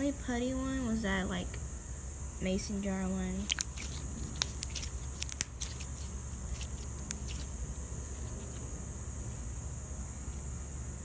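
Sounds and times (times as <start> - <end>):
steady hiss: 0.0 - 11.0
slime clicks and pops: 3.5 - 5.8
slime squished by hand: 3.5 - 7.6.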